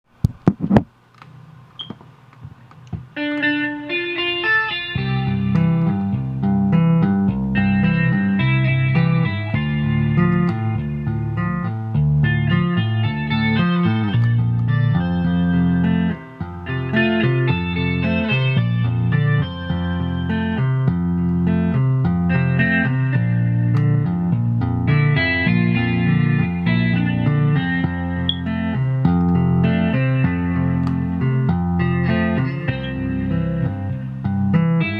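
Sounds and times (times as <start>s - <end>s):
tapped string melody: 4.4s - 34.9s
bass notes: 4.8s - 34.9s
clicks: 14.1s - 14.8s.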